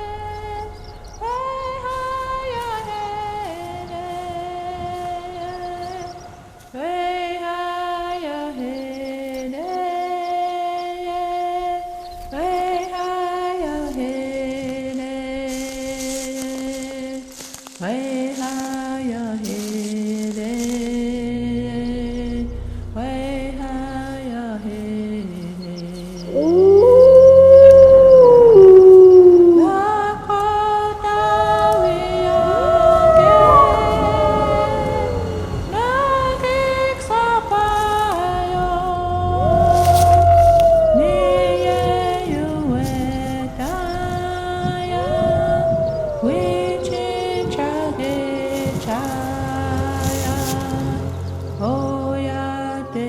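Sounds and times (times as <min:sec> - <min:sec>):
wordless voice-like melody: 0:06.8 - 0:53.0
wolves howling: 0:26.3 - 0:53.0.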